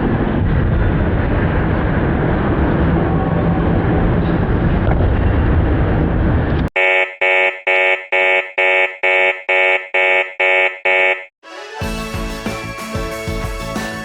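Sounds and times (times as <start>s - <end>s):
loud dense rumbling: 0.0s - 6.7s.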